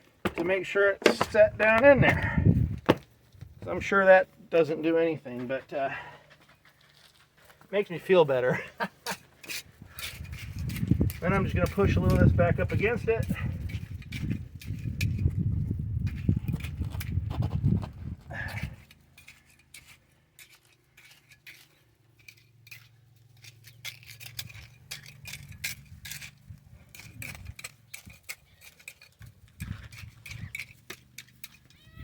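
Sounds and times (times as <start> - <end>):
trowel scraping mortar: 0.2 - 2.8, 7.8 - 15.4, 16.0 - 32.0.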